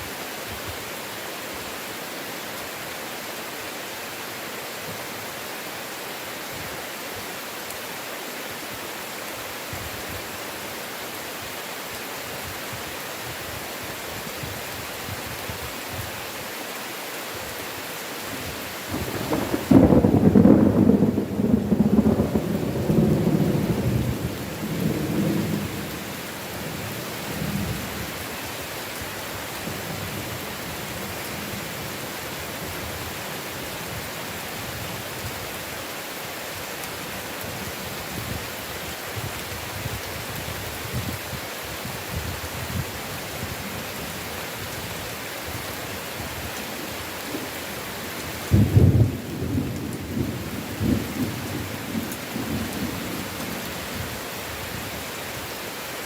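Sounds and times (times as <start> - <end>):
steady rain hiss: 0.0 - 56.0
thunder clap and rumbles: 18.9 - 26.0, 48.5 - 53.3.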